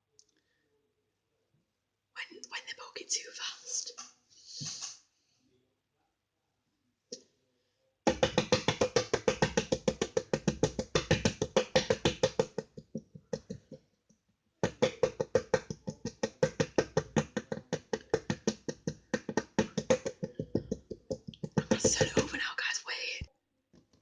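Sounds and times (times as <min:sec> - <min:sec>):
slime being poked: 0:08.1 - 0:13.8, 0:14.6 - 0:22.4.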